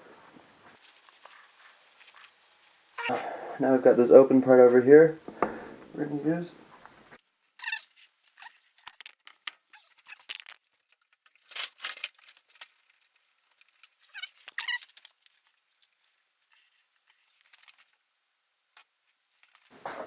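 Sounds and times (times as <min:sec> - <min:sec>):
rubber tire squeaking on rim: 0:07.6 - 0:10.5, 0:14.0 - 0:15.0.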